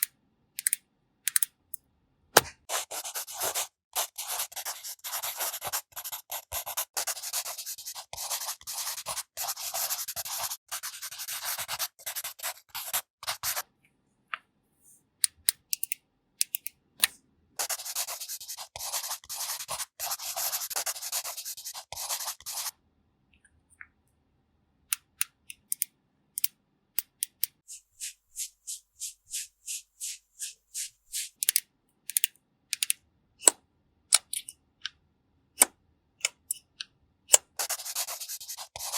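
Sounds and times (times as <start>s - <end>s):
brush scratching against a surface: 17.6s - 22.7s, 27.7s - 31.4s, 37.6s - 38.9s.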